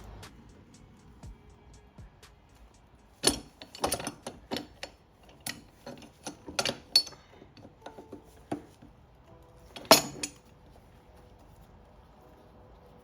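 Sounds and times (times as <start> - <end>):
hand tools clanking on metal: 3.1 - 8.9, 9.6 - 10.5.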